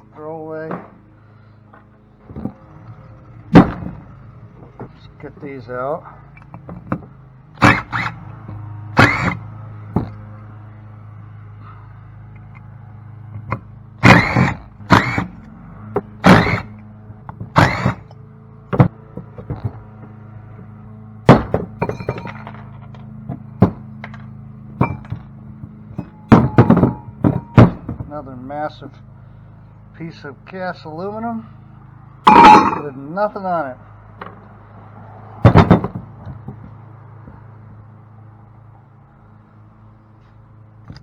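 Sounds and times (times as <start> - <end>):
metal knocks on pump housing: 21.3 - 22.6, 24.8 - 25.3, 26.0 - 28.1, 32.3 - 32.9, 35.4 - 36.7.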